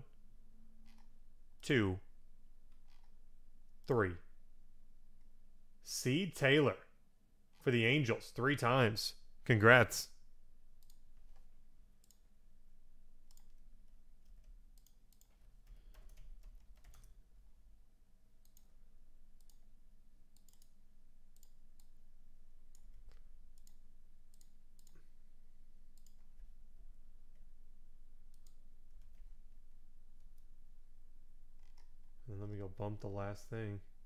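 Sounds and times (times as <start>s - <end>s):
low steady hum: 0.0s - 15.7s, 16.5s - 34.0s
faint clicks: 10.8s - 12.2s, 18.4s - 18.7s, 20.4s - 20.8s, 22.7s - 25.1s, 26.0s - 26.3s.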